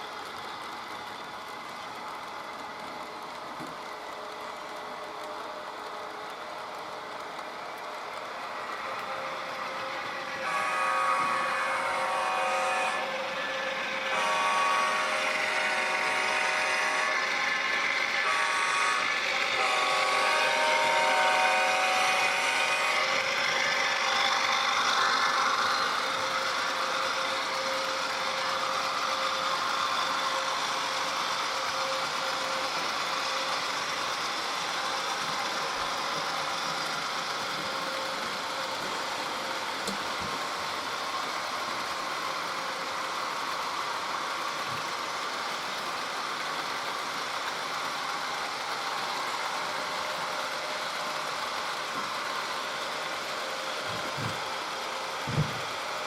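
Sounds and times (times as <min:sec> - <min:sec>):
model locomotive horn chord: 0:10.4 - 0:17.3, 0:18.2 - 0:23.2.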